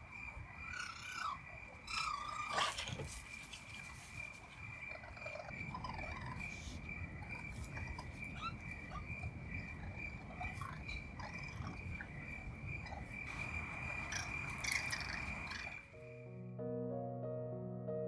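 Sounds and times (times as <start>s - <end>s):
high insect trill: 0.0s - 16.1s
gentle music: 14.6s - 18.0s.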